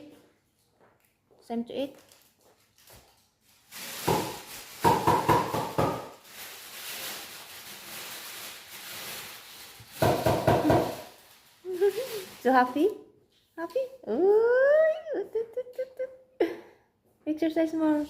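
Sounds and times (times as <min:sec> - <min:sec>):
soft rustle: 0:11.0 - 0:13.6.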